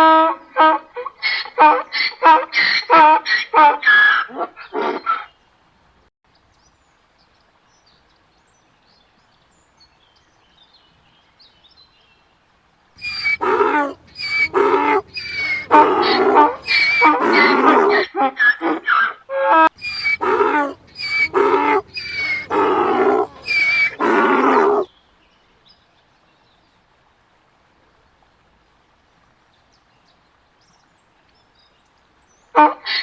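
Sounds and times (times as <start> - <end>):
donkey braying: 13.0 - 18.1, 19.8 - 24.9.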